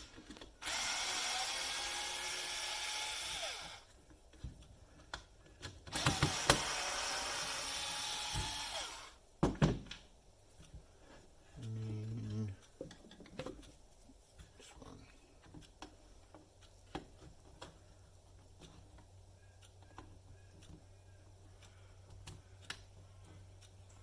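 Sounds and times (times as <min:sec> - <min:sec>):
low steady hum: 0:00.0 - 0:24.0
small parts clicking: 0:04.6 - 0:09.1.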